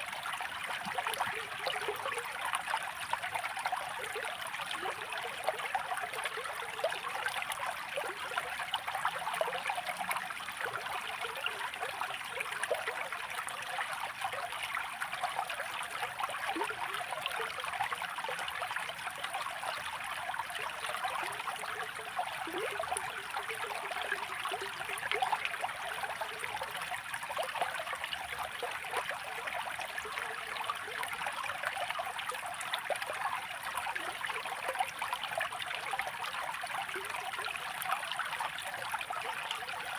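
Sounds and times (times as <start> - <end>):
water trickling and babbling: 0.0 - 39.9.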